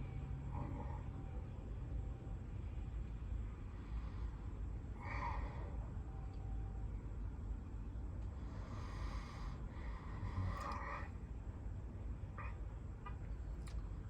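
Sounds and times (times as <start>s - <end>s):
steady low rumble: 0.0s - 14.0s
person breathing drowsily: 3.7s - 6.0s, 8.4s - 11.1s.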